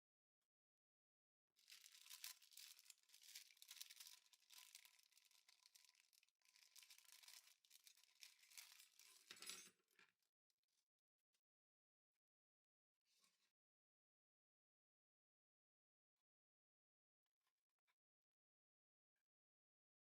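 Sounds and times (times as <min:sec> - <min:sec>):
packaging crinkling: 0:01.6 - 0:09.2.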